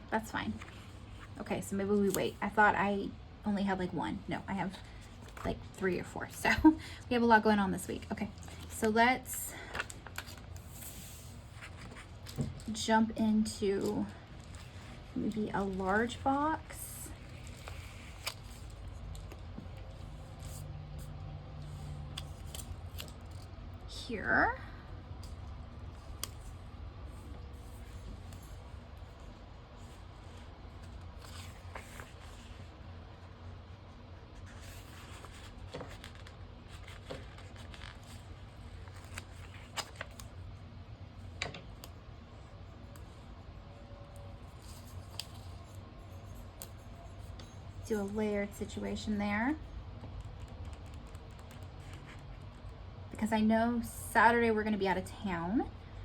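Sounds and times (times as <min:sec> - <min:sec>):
low room hum: 0:00.0 - 0:56.0
paper rustling: 0:17.1 - 0:23.5, 0:27.5 - 0:32.8, 0:34.3 - 0:40.3.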